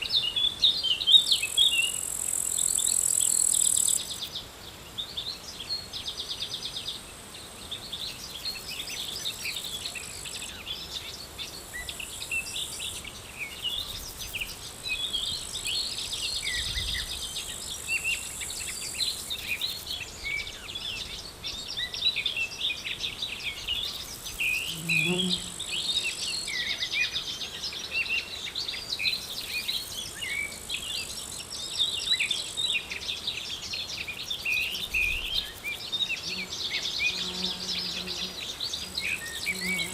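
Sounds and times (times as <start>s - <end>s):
small birds chirping: 1.0s - 39.9s
insect trills: 1.2s - 4.3s, 8.0s - 20.6s, 23.4s - 27.1s, 34.0s - 39.9s.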